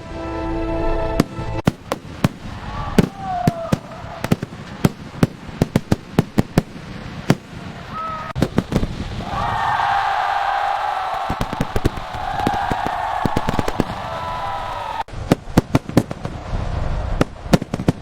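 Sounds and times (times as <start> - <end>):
music: 0.0 - 1.6
fireworks bangs: 1.2 - 18.0
firework whistles: 7.9 - 15.2.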